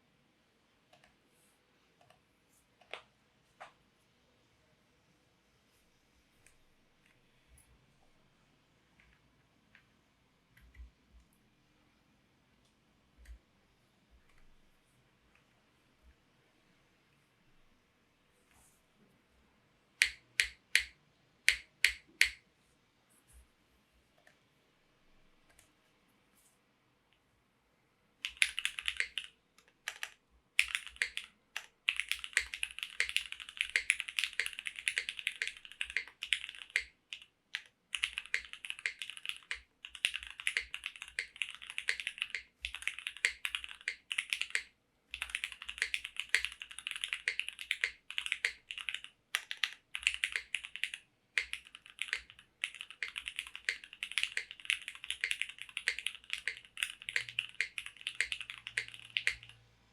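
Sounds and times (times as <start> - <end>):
mechanical keyboard typing: 20.0 - 22.4, 28.2 - 59.6.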